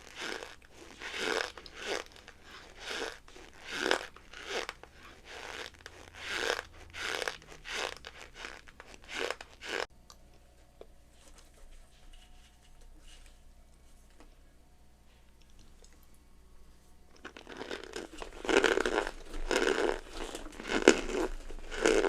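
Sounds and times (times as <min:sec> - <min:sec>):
cornstarch creaking when squeezed: 0:00.0 - 0:09.9, 0:17.2 - 0:22.0.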